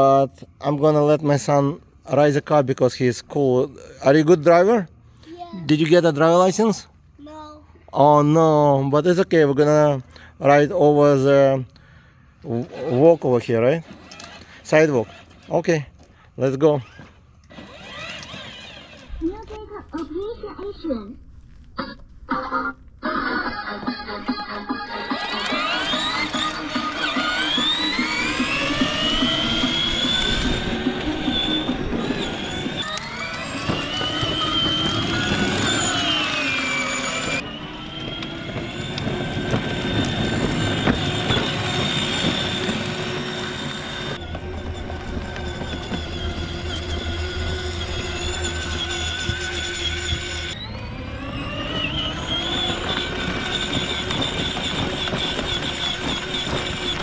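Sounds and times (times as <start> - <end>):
electric motors whining: 12.4 - 20.4, 22.4 - 57.0.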